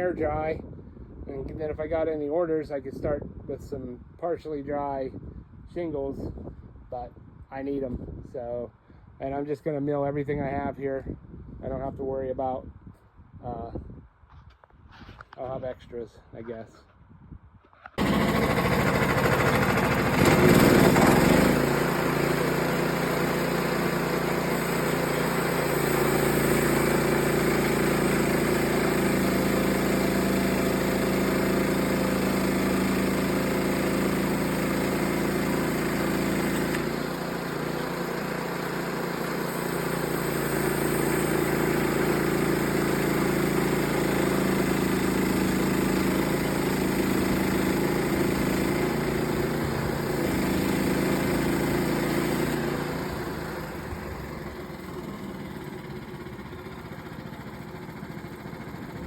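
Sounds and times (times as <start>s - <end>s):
sawmill engine running: 18.0s - 59.0s.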